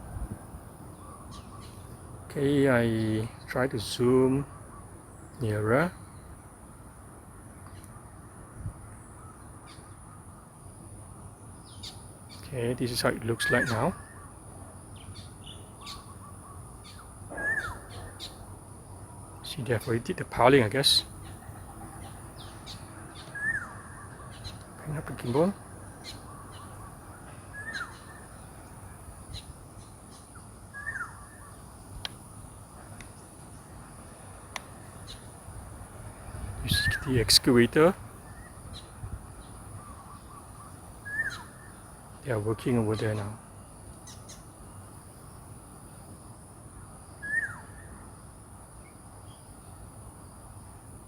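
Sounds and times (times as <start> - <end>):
steady background hum: 0.0 - 51.0
bird calls gliding downward: 15.1 - 18.4, 21.2 - 31.6, 39.8 - 41.8, 47.2 - 47.9
faint clicks: 32.0 - 32.2.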